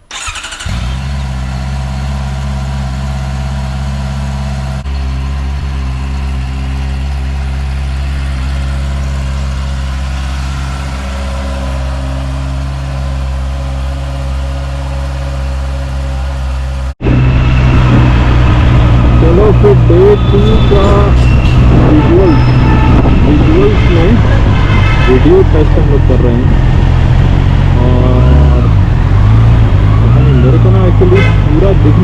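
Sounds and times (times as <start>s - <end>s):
motorcycle engine idling: 0.1s - 16.9s.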